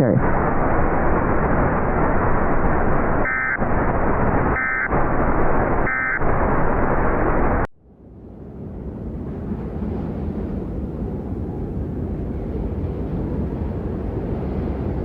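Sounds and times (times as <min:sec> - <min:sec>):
radio static hiss: 0:00.0 - 0:07.7
two-tone alert data bursts: 0:03.2 - 0:03.6, 0:04.5 - 0:04.9, 0:05.8 - 0:06.2.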